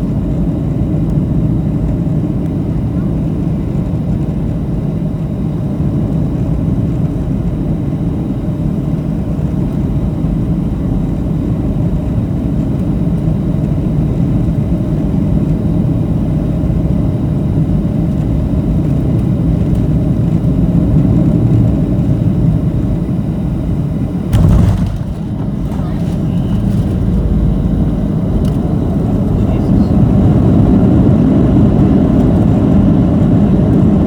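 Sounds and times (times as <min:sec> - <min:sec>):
airplane cabin rumble: 0:16.5 - 0:34.0.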